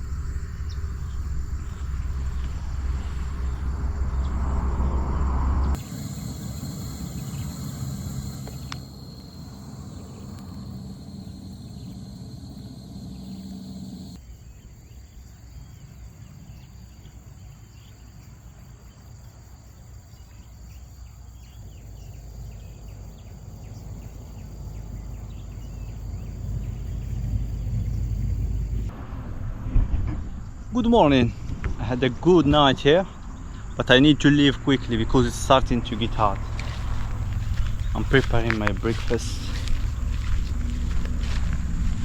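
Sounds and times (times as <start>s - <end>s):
low rumble: 0.0s - 14.2s, 24.2s - 42.0s
night insects trilling: 0.0s - 42.0s.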